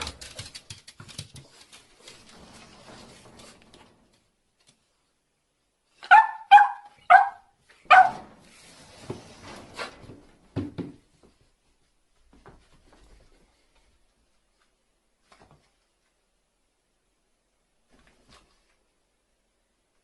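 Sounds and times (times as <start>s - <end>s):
faint rustling: 0.0s - 5.3s.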